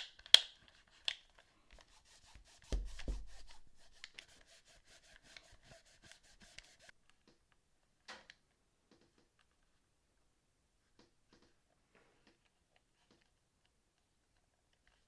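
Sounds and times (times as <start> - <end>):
soft thump: 2.6 - 3.7.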